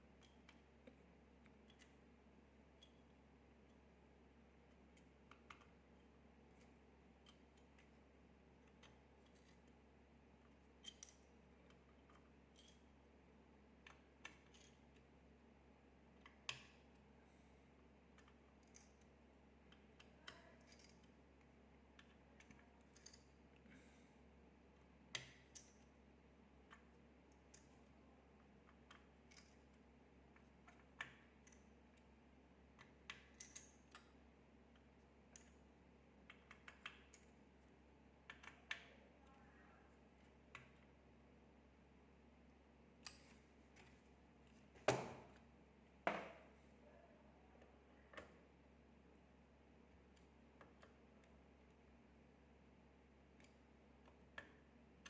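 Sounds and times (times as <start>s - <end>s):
faint low hum: 0.0s - 55.0s
small clicks and taps from hands: 0.2s - 2.0s, 4.6s - 8.0s, 36.2s - 37.4s.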